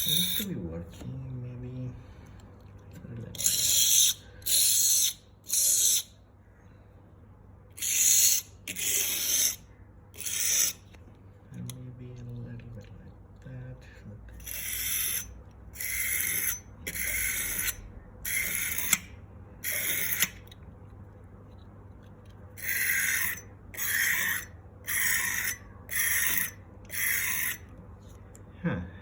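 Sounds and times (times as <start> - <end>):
blade scraping on sharpening stone: 0.0 - 0.5, 3.4 - 6.1, 7.8 - 9.6, 10.2 - 10.8, 14.4 - 20.4, 22.6 - 27.6.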